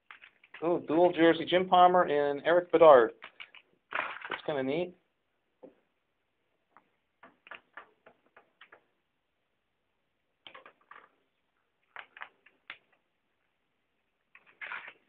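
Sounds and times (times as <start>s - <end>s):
cards clicking and rustling: 0.1s - 0.6s, 3.2s - 4.5s, 11.8s - 13.0s, 14.3s - 15.0s.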